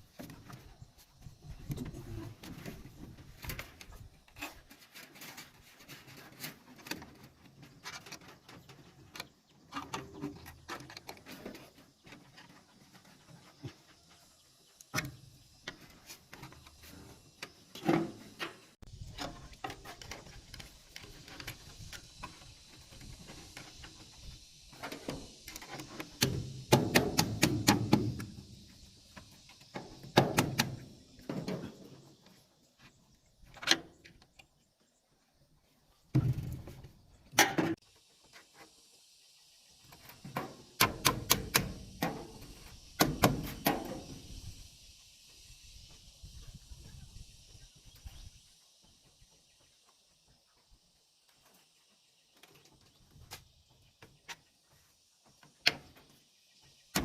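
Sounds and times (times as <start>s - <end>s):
sharp knocks and clatter of bamboo: 0.0s - 14.2s, 14.8s - 32.4s, 36.1s - 37.8s, 39.9s - 44.4s, 52.3s - 56.2s.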